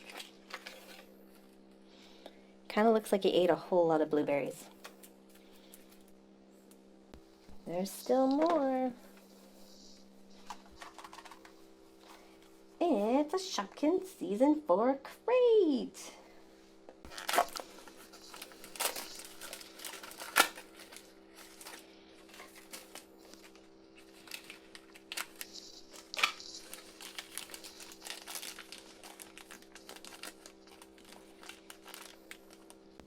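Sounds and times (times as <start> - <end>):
plastic packaging crinkling: 0.0 - 1.1, 9.6 - 12.2, 17.1 - 33.0.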